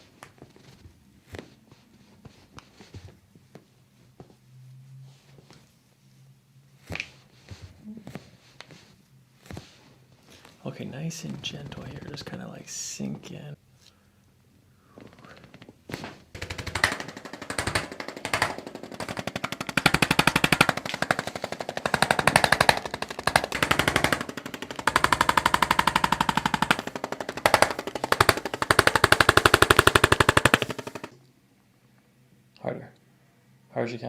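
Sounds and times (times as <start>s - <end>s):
percussive massage tool rattling: 15.0s - 31.2s.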